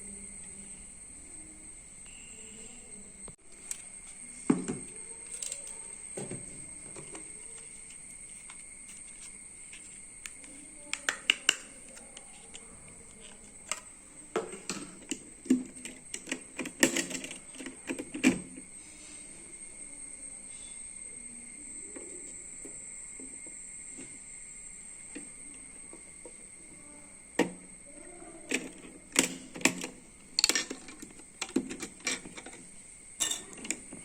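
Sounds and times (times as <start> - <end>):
computer parts clicking and knocking: 14.4 - 18.6, 28.5 - 32.6.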